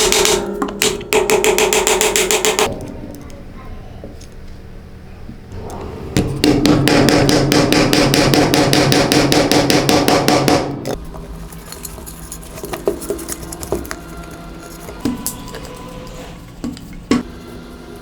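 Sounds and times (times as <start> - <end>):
rapid sharp mechanical knocks: 0.0 - 2.7, 6.1 - 11.0
steady hum: 0.0 - 18.0.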